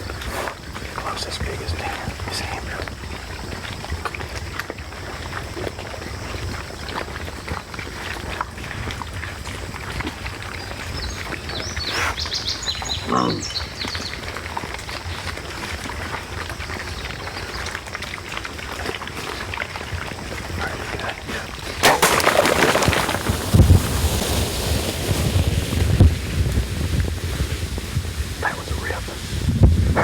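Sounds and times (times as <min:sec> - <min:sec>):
hog squealing: 0:28.4 - 0:29.2.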